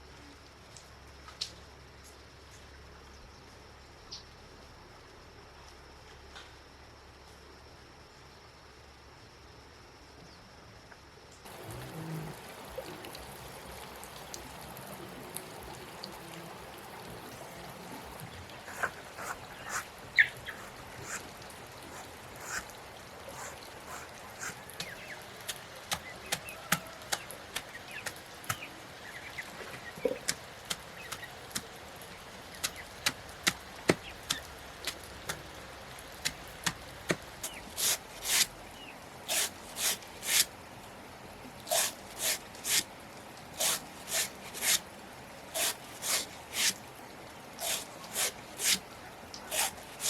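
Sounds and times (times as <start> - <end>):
hissing blade strokes: 18.7 - 19.8, 20.4 - 21.2, 21.9 - 22.6, 23.4 - 24.6, 41.7 - 42.8, 43.6 - 44.8, 45.6 - 46.7, 47.6 - 48.8, 49.5 - 50.0
blade chopping: 45.6 - 46.7, 49.5 - 50.0.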